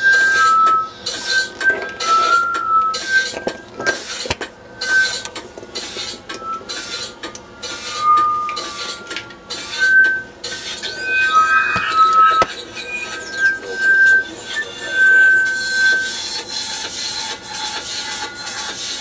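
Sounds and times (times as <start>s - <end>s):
thin high-pitched tones: 9.7s - 16.2s.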